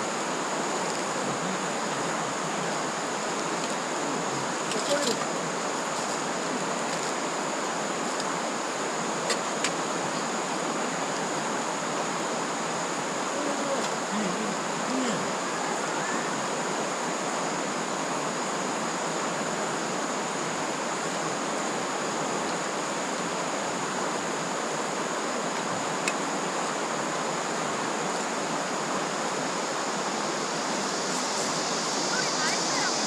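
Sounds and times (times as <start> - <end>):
stream rushing: 0.0 - 33.0
thin high steady tone: 29.4 - 33.0.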